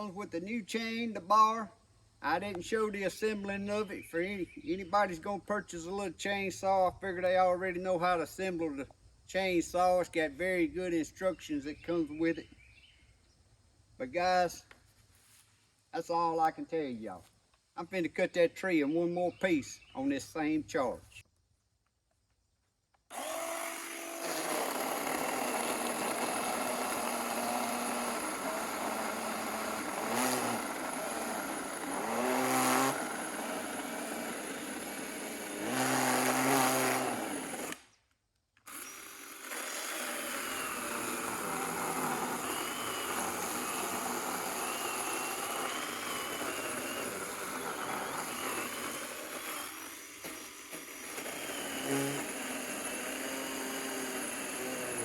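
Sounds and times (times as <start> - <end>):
electric chainsaw cutting wood: 23.1 - 38.0, 38.6 - 55.0.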